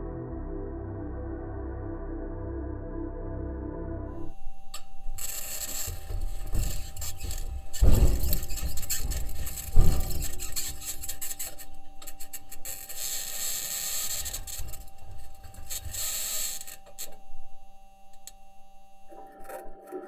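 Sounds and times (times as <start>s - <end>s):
heavy thump: 4.2s - 13.4s, 14.0s - 18.5s
wheels knocking and rattling: 4.2s - 19.6s
faint steady tone: 4.2s - 20.0s
high-pitched scratching: 4.2s - 20.0s.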